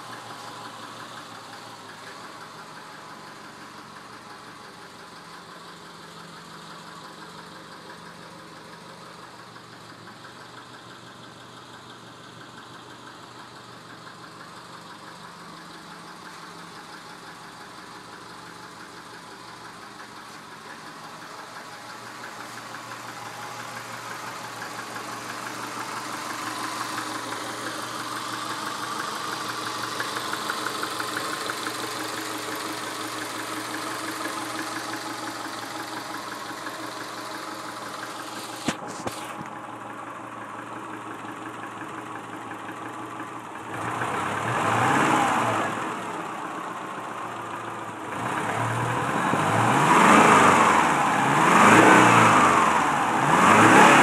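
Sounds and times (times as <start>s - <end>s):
car engine idling with knock: 0.0s - 54.0s
engine revving: 43.6s - 54.0s.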